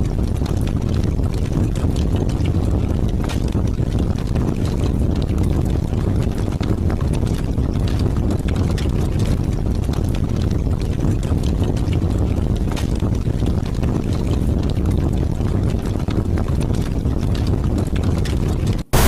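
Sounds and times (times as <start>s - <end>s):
heavy rain pattering: 0.0s - 19.0s
strong wind rumbling: 0.0s - 19.0s.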